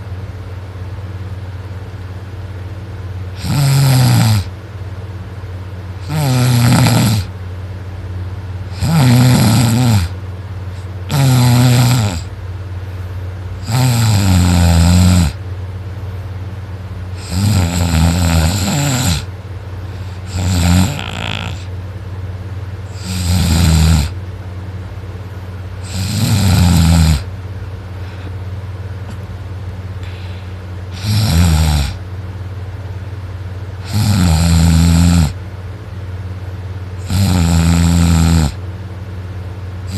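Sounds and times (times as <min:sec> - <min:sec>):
steady low hum: 0:00.0 - 0:39.9
person snoring loudly: 0:03.3 - 0:04.5, 0:06.0 - 0:07.3, 0:08.7 - 0:10.2, 0:10.8 - 0:12.3, 0:13.6 - 0:15.4, 0:17.1 - 0:19.3, 0:20.0 - 0:21.7, 0:22.9 - 0:24.2, 0:25.8 - 0:27.3, 0:30.9 - 0:32.0, 0:33.8 - 0:35.4, 0:37.0 - 0:38.6.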